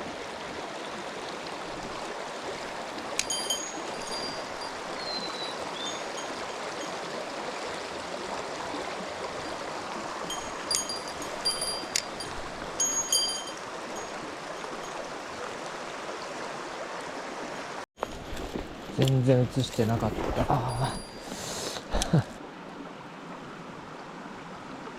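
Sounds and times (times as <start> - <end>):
stream rushing over rocks: 0.0 - 24.9
sharp clicks with ringing tone: 10.6 - 13.6.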